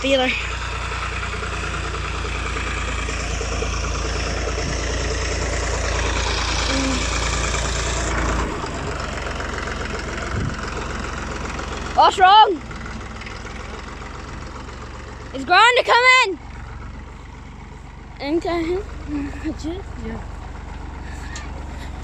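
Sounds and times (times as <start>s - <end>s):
diesel tractor engine running: 0.0s - 22.0s.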